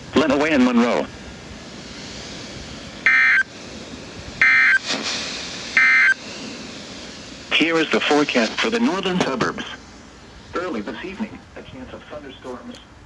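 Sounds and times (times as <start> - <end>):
radio hiss: 0.0 - 13.0
buzzy digital data bursts: 4.4 - 4.8, 5.8 - 6.2.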